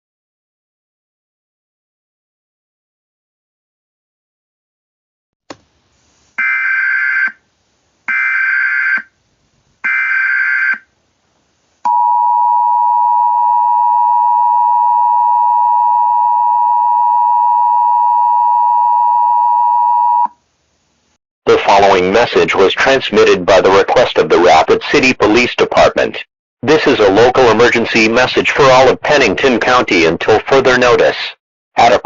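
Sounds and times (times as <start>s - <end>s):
click: 5.5s - 5.7s.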